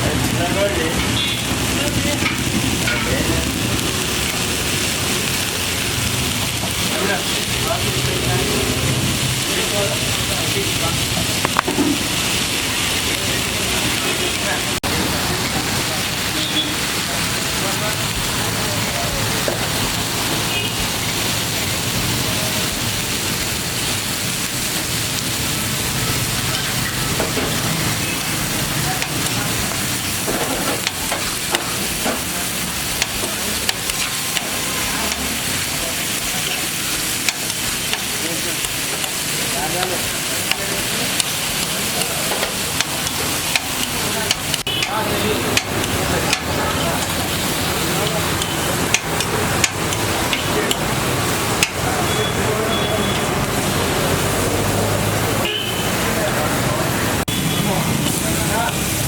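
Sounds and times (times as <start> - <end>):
food sizzling in a pan: 0.0 - 59.0
metal spatula stirring food: 22.6 - 52.2.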